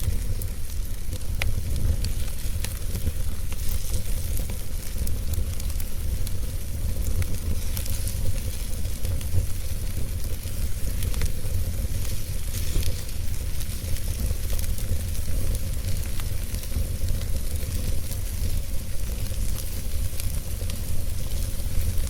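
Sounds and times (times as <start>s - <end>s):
wood fire crackling: 0.0s - 22.0s.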